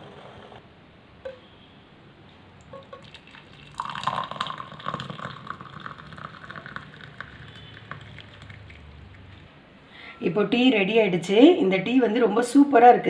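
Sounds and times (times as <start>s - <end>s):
liquid pouring through strainer: 2.6s - 9.4s.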